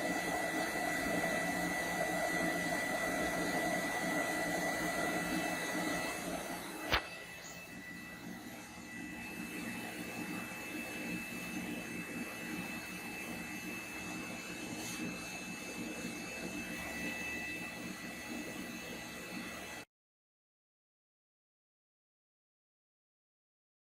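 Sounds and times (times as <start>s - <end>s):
boiler burner roaring: 0.0s - 19.9s
faint high-pitched whines: 6.0s - 11.2s.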